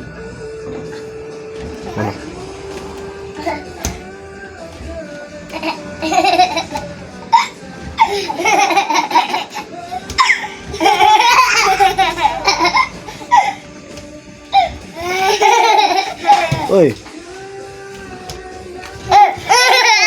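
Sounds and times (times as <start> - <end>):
children laughing and squealing: 5.2 - 16.9, 19.0 - 20.0.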